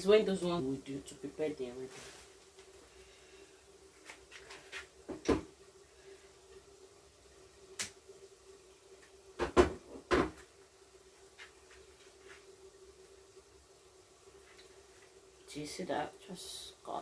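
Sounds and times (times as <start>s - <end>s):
faint steady hum: 0.0s - 17.0s
knocks and clunks of kitchen items: 5.0s - 5.5s, 9.4s - 10.5s.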